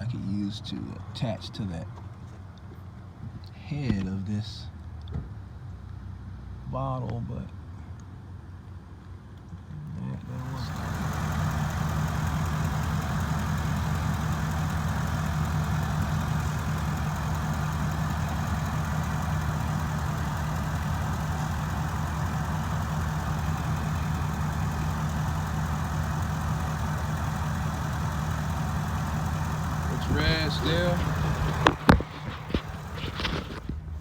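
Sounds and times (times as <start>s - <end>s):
van engine idling: 10.2s - 33.7s.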